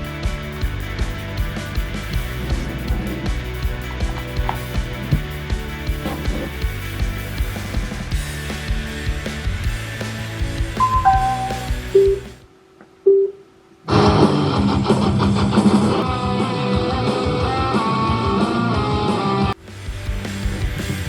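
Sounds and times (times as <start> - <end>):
strummed guitar track: 0.0 - 12.3
music: 0.0 - 12.5, 14.1 - 21.0
guitar music: 10.8 - 12.3
short beeps: 10.8 - 12.3, 13.1 - 13.4.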